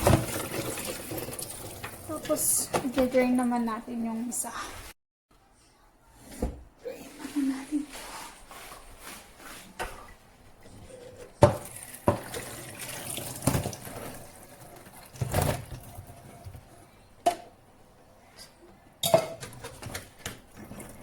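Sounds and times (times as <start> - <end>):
water draining into sink: 0.0 - 2.3, 11.6 - 14.4.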